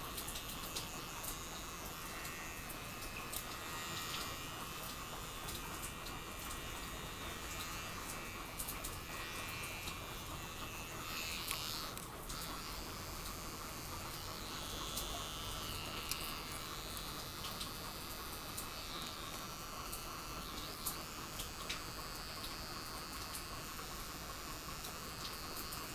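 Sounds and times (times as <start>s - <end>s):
faint intermittent buzz: 0.0s - 25.9s.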